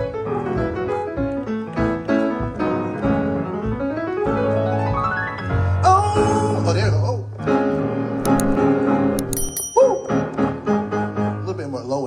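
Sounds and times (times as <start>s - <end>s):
keyboard solo: 8.0s - 11.4s.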